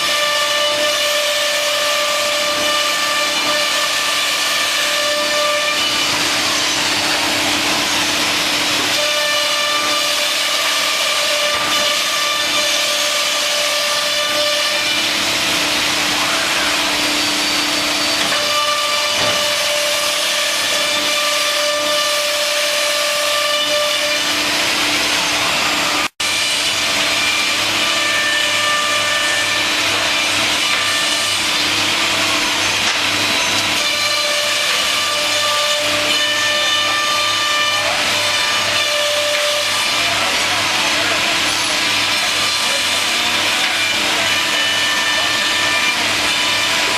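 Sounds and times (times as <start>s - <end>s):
machine cutting noise: 0.0s - 46.9s
machine spindle whine: 0.7s - 46.9s.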